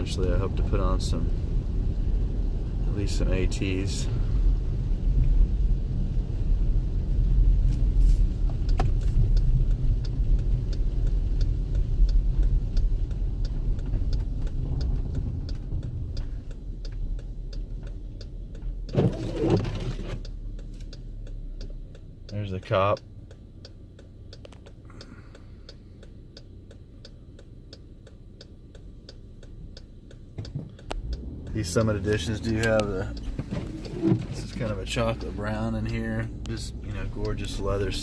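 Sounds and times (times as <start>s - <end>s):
evenly spaced ticking: 8.6s - 19.0s, 20.2s - 38.0s
tyre and drivetrain rumble: 18.6s - 20.9s, 30.3s - 38.0s.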